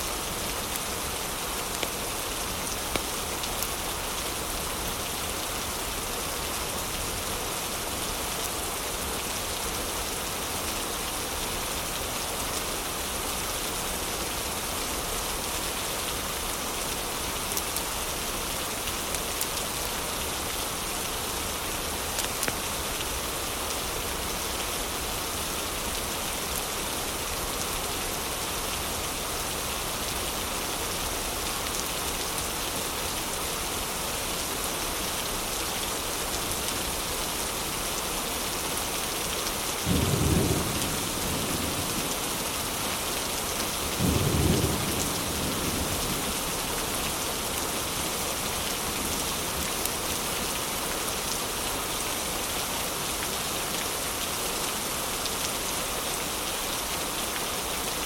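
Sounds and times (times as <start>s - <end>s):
heavy rain falling: 0.0s - 58.0s
low thunder rumbles: 39.9s - 42.3s, 44.0s - 46.5s.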